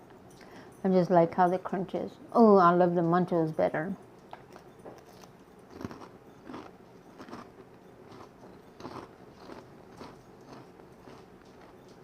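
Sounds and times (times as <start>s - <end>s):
person crunching chips: 5.1s - 11.8s.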